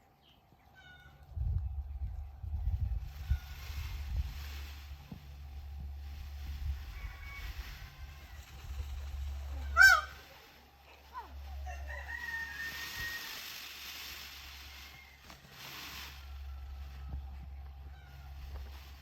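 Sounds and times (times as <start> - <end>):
peacock call: 6.6 - 10.5, 11.4 - 17.1
faint bird calls: 6.6 - 11.4.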